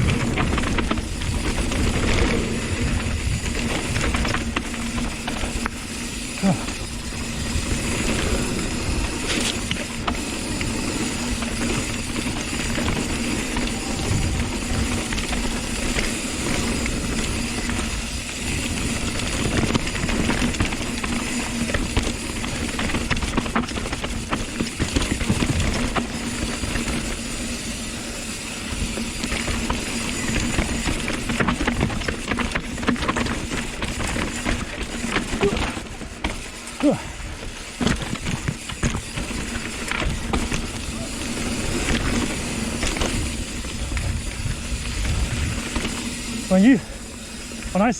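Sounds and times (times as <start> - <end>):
mountain bike rattling: 0.0 - 47.9
wind on microphone: 13.6 - 15.4, 43.2 - 45.8.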